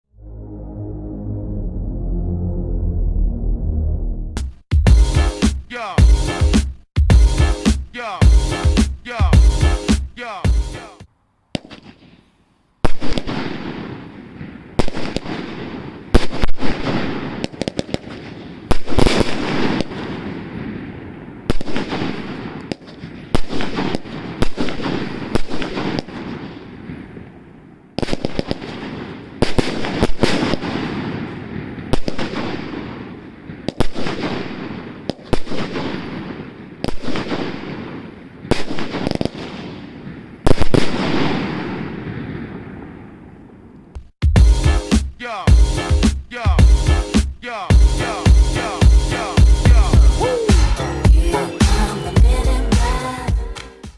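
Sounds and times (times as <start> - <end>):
firework bangs with crackle: 11.6 - 12.2, 12.8 - 27.2, 28.0 - 42.9.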